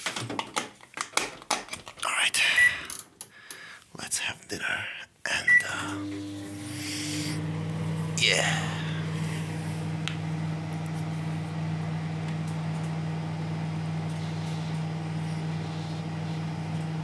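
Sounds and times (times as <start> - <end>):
microwave oven humming: 5.5 - 17.0
microwave click: 11.6 - 14.2.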